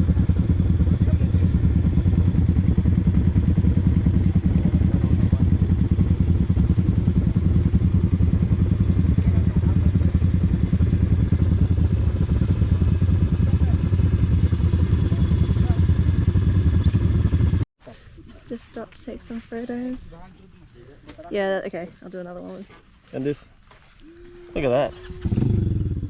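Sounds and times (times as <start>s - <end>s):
atv engine running: 0.0s - 17.6s, 24.6s - 26.0s.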